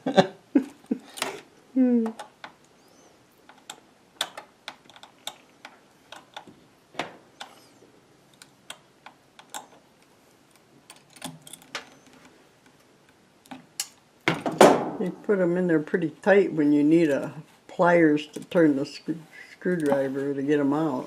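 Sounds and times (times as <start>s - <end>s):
screwdriver clicking and tapping: 3.5s - 6.6s, 8.4s - 9.8s.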